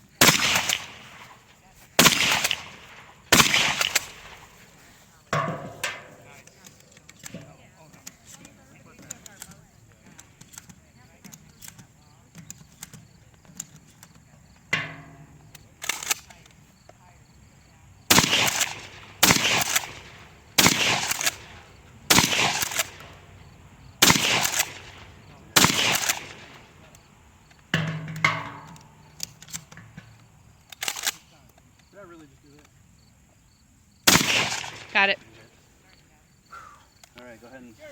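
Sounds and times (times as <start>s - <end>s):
faint distant gunshots: 0.0s - 7.5s, 18.0s - 31.2s, 34.0s - 35.7s
shotgun shots: 0.2s - 6.2s, 18.1s - 27.0s, 34.0s - 35.5s.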